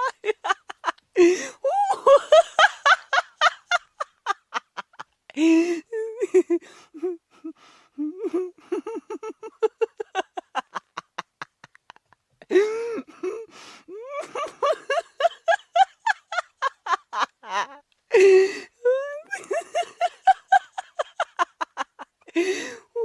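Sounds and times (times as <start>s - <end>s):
person laughing: 0.0s - 23.0s.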